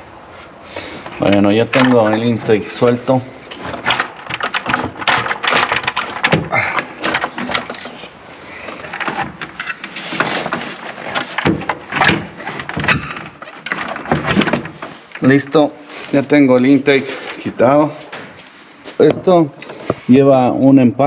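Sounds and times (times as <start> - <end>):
metal parts clunking and scraping: 0.8 - 20.1.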